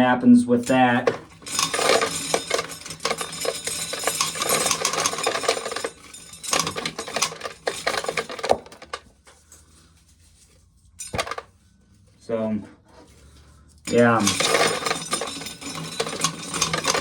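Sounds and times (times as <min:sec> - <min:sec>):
dried corn kernels rattling: 0:00.6 - 0:10.3, 0:13.2 - 0:17.0.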